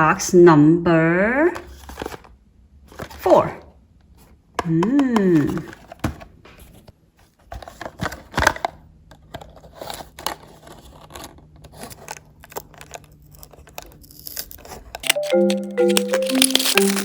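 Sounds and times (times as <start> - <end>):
cardboard box and plastic being opened: 1.6 - 3.2, 5.4 - 17.0.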